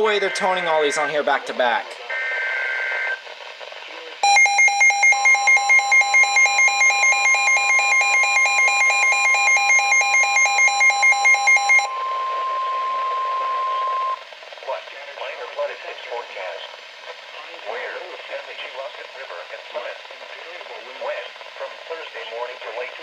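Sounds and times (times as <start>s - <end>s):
radio alarm beeping rapidly: 0.0s - 1.2s, 4.2s - 14.2s
data burst tones: 4.2s - 14.2s
steady alarm tone: 4.2s - 14.2s.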